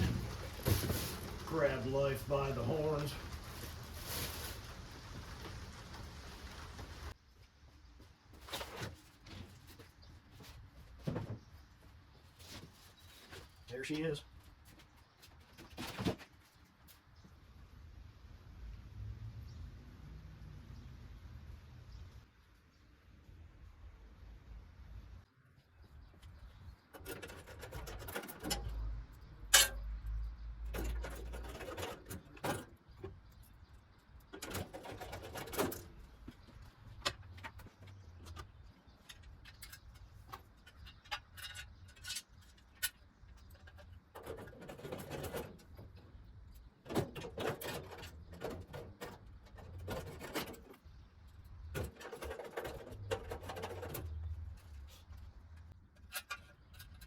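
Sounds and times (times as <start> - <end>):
rustling and scraping: 0.0 - 17.4, 26.0 - 57.0.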